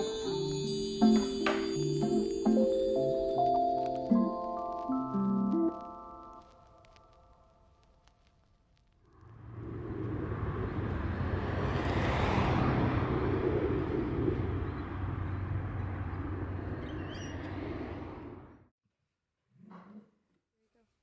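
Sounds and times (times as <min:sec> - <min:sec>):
low rumble with hum: 0:09.0 - 0:18.5.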